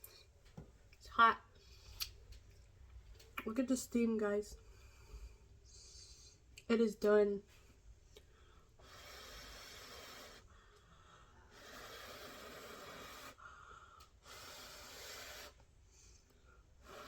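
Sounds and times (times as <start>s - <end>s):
person blowing breathily: 8.5s - 17.0s.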